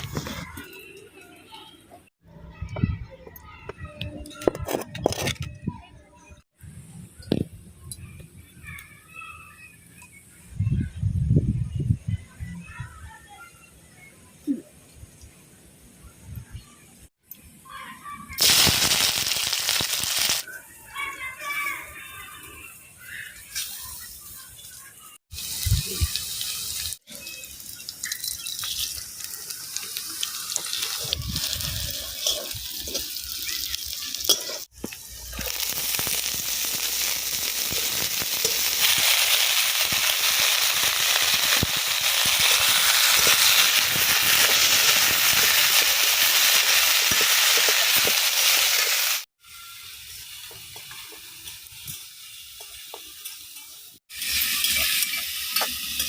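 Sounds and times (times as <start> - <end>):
food frying in hot oil: 18.4 - 20.4, 23.5 - 56.0.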